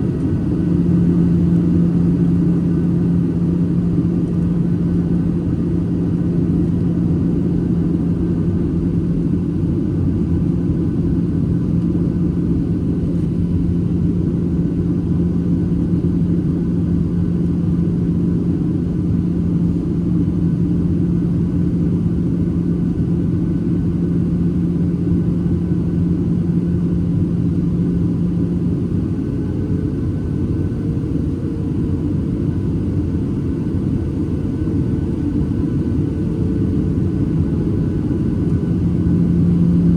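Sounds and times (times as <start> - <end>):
low steady hum: 0.0 - 29.5, 34.3 - 39.9
airplane cabin roar: 0.0 - 39.9
higher steady tone: 38.4 - 39.9.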